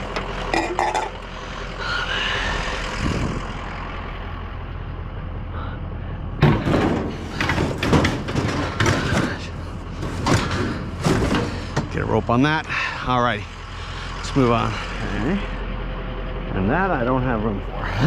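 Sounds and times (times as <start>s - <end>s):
scrap metal clanks and knocks: 0.0s - 1.2s, 6.4s - 12.8s
truck engine idling: 0.0s - 18.0s.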